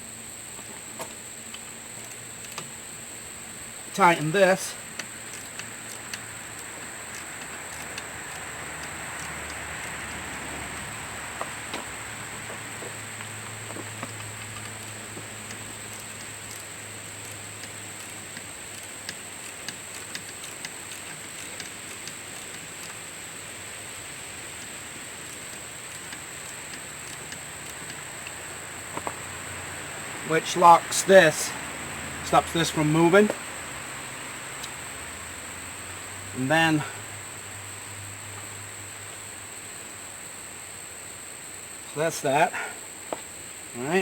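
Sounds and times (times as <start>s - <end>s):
steady background hiss: 0.0s - 44.0s
wrench clicking and tapping on bolt: 4.9s - 10.9s, 14.0s - 28.4s.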